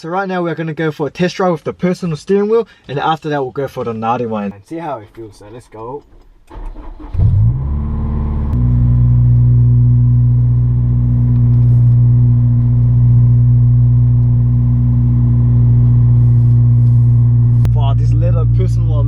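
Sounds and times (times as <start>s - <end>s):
engine starter cranking: 6.1s - 7.6s
car engine idling: 7.6s - 19.0s.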